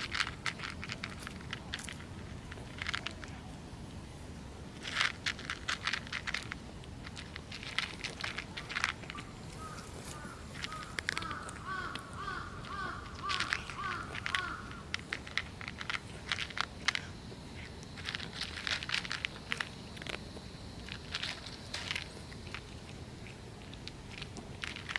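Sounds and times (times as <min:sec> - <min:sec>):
crisp crunches and clicks: 0:00.0 - 0:04.0, 0:04.7 - 0:24.9
bird calling repeated notes: 0:09.1 - 0:14.8.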